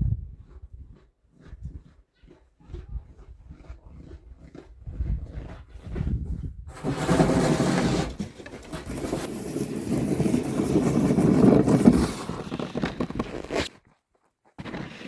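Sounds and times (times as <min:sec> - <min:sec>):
hand tool scraping ground: 0:06.7 - 0:14.0.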